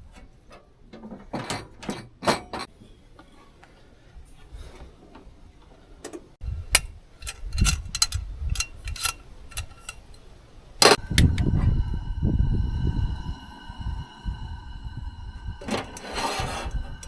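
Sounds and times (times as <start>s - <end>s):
low rumble: 11.0s - 17.0s.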